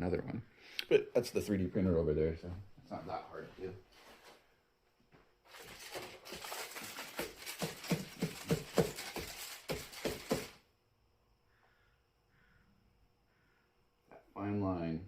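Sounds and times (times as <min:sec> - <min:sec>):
brush dabbing paint on plastic: 0:05.9 - 0:10.6.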